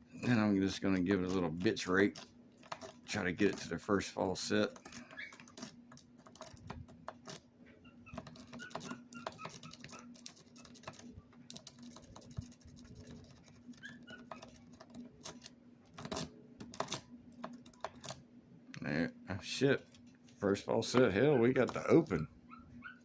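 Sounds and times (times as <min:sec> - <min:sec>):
lock pick clicking and scraping: 0:01.2 - 0:03.8, 0:04.6 - 0:07.5, 0:08.1 - 0:18.2.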